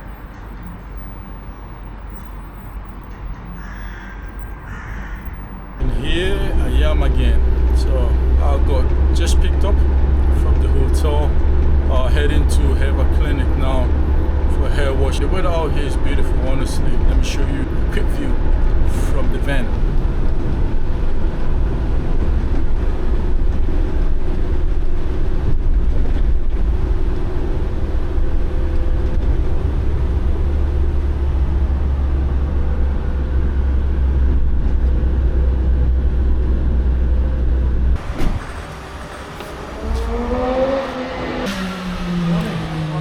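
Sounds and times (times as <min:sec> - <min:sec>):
engine and road noise drone: 0:00.0 - 0:43.0.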